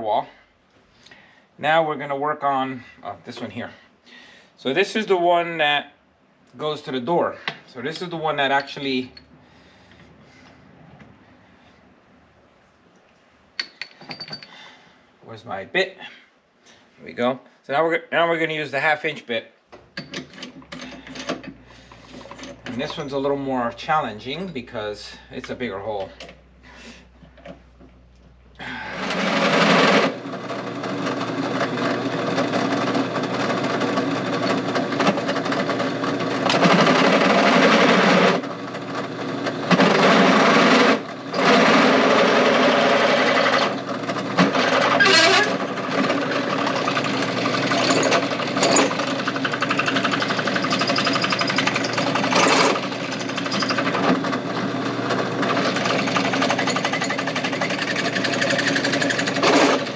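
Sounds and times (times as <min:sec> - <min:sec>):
drill press boring through metal: 0:28.8 - 0:59.9.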